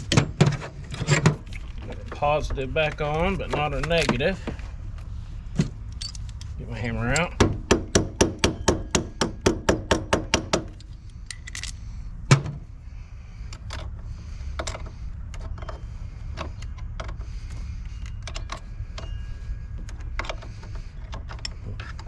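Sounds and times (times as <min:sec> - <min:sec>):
metal tools clinking: 0:05.8 - 0:07.4, 0:10.8 - 0:11.9.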